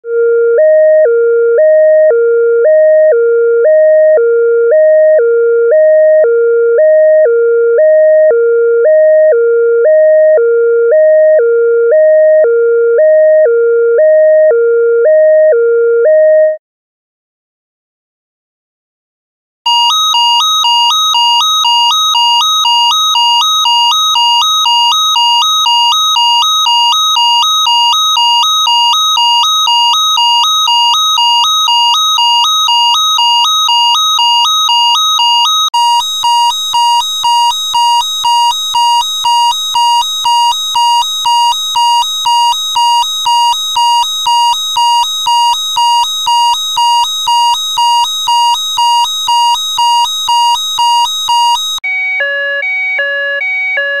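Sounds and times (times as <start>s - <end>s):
electronic alarm beeping: 0.6s - 16.6s, 19.7s - 54.0s
brighter alarm beep: 19.7s - 53.8s.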